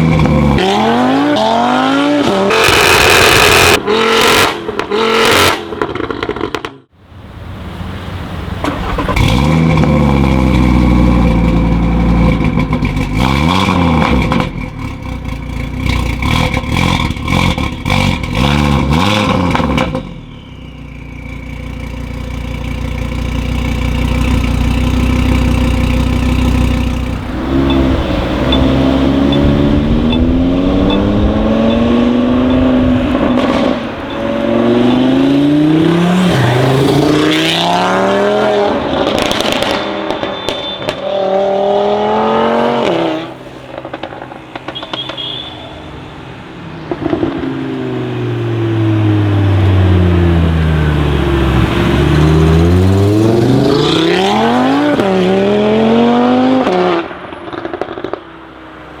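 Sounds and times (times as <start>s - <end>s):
car engine revving: 0.0s - 6.9s, 8.5s - 20.2s, 21.1s - 45.2s, 46.3s - 59.0s
exhaust pops and crackles: 8.6s - 20.2s, 39.0s - 41.1s, 43.6s - 45.5s, 46.8s - 47.5s, 56.6s - 58.6s.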